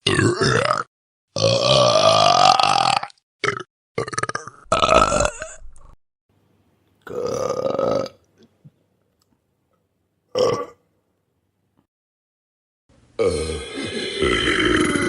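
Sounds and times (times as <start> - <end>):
person burping: 0.0 - 6.0, 7.1 - 8.2, 10.3 - 10.8, 13.2 - 15.0.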